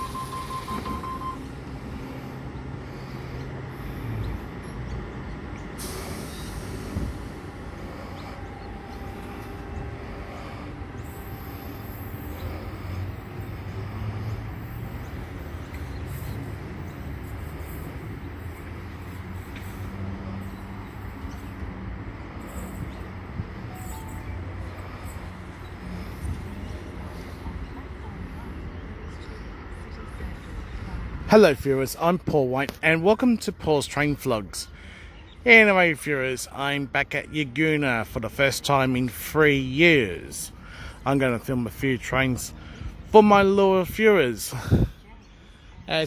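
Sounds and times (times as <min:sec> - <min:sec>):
electric train rumbling: 0:00.0 - 0:31.4.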